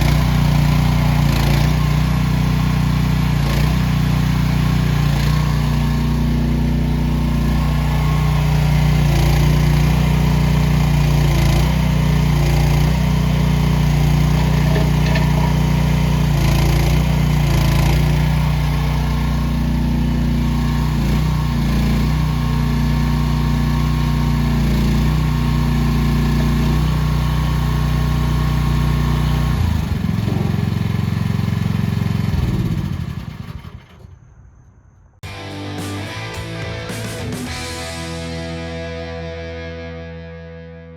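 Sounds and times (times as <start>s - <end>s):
mini excavator engine running: 0.0s - 34.4s.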